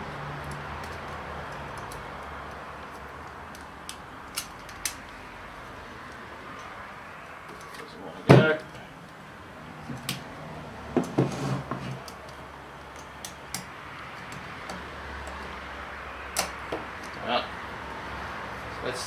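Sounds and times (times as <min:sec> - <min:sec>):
metallic clicks and taps: 0:00.4 - 0:05.2, 0:12.0 - 0:15.6.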